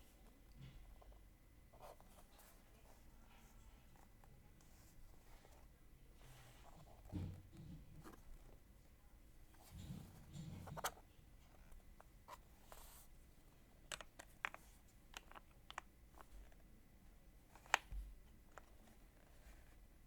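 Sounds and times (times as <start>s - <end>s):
keyboard plastic clicks and taps: 13.9s - 15.9s.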